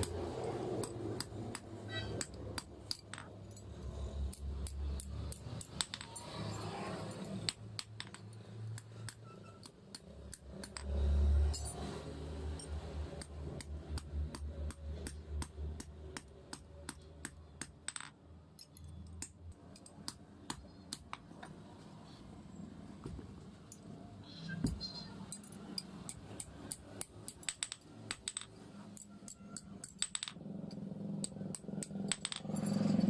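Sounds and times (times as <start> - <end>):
light metallic clinks and taps: 23.0 - 26.2, 31.5 - 33.0.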